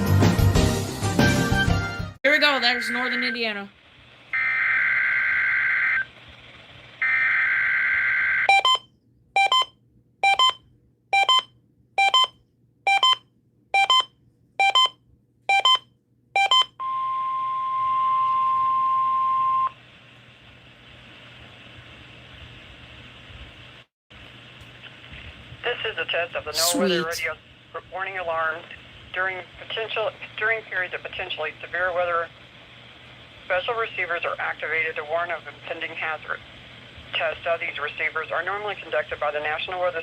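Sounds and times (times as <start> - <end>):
steady warning alarm tone: 2.4 - 3.6, 4.4 - 6.0
warbling data tones: 2.4 - 3.6
short beeps: 8.5 - 10.6, 13.8 - 19.7
faint radio hiss: 19.8 - 40.0.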